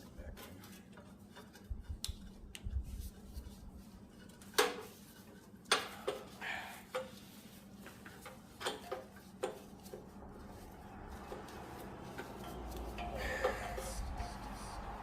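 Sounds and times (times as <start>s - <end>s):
small clicks and taps of parts: 0.4s - 2.8s.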